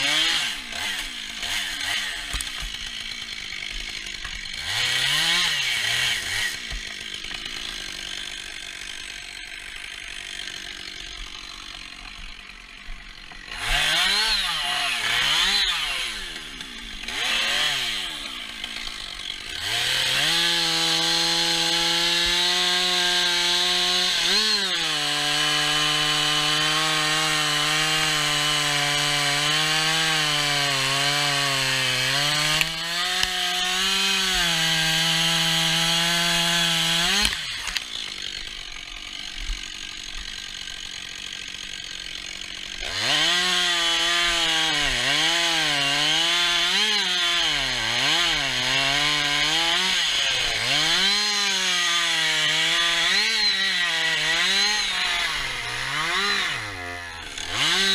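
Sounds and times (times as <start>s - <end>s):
chainsaw revving and cutting: 0.0s - 57.9s.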